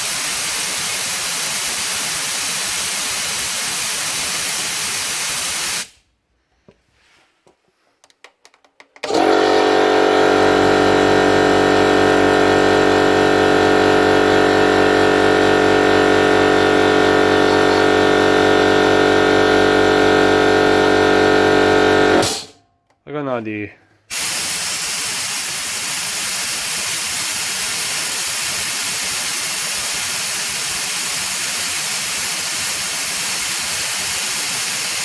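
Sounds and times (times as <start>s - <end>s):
compressed air hissing: 0.0s - 6.0s, 22.1s - 22.6s, 24.1s - 35.0s
loud steady drone: 9.1s - 22.5s.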